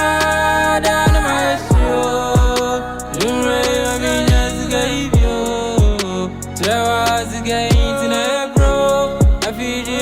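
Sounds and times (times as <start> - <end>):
sung melody: 0.0 - 10.0
deep bass drum hits: 1.1 - 3.3, 4.3 - 4.6, 5.2 - 6.1.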